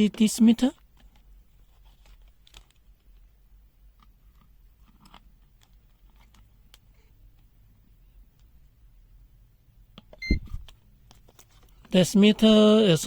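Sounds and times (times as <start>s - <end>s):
faint clicks and handling noises: 0.1s - 7.6s, 9.9s - 12.0s.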